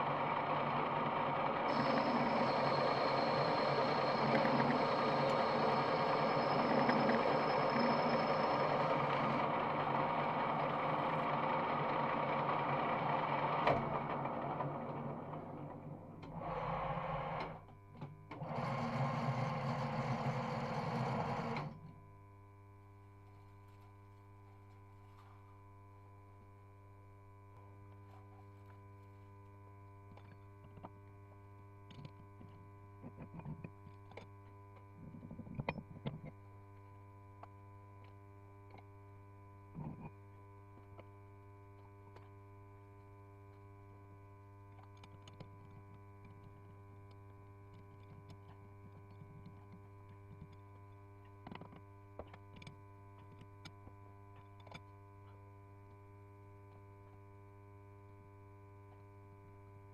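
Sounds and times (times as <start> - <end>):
metal lathe motor humming: 0.0 - 17.6, 18.4 - 21.7
small clicks and knocks: 51.2 - 55.4.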